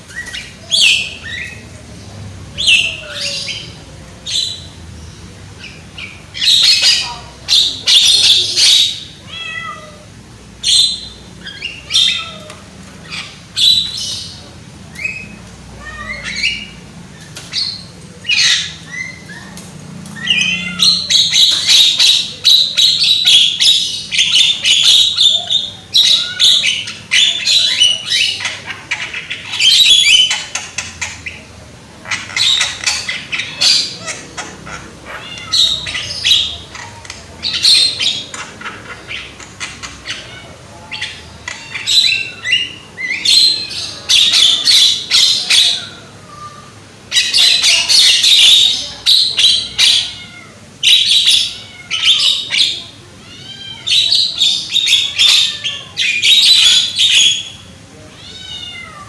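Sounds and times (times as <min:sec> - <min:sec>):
myna squawking and chattering: 0:00.0 - 0:59.0.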